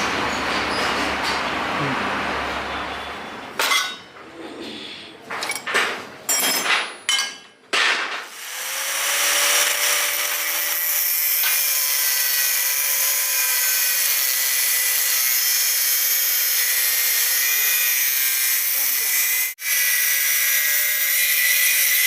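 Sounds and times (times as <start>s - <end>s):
power tool running with hiss: 8.3s - 20.4s.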